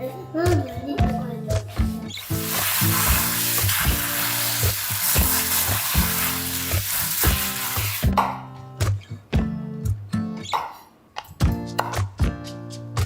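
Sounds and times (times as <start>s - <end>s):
soft background music: 0.0s - 13.0s
food sizzling in a pan: 1.7s - 8.2s.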